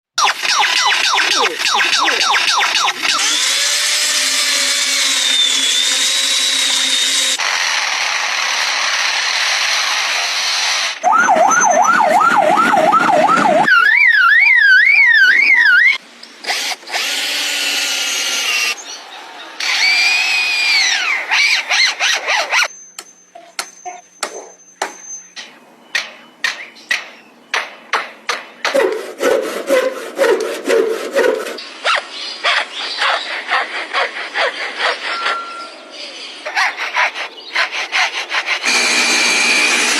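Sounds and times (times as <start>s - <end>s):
lyrebird warbling siren-like alarm: 0.2s - 3.4s, 11.0s - 16.0s
lyrebird drill-like buzzing: 36.6s - 39.9s.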